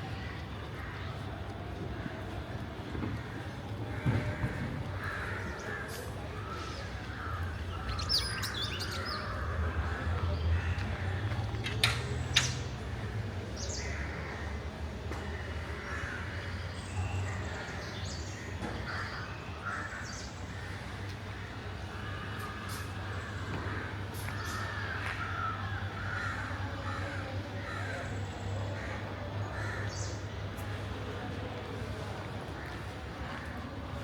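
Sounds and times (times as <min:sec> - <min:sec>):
distant traffic rumble: 0:00.0 - 0:34.0
crows cawing: 0:03.2 - 0:08.5, 0:15.6 - 0:16.5, 0:18.8 - 0:28.1, 0:28.8 - 0:30.1.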